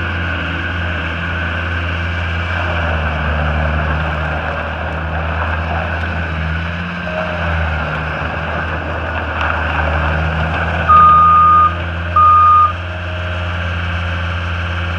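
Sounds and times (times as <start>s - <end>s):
diesel engine running: 0.0s - 14.9s
backup alarm beeps: 10.9s - 12.8s.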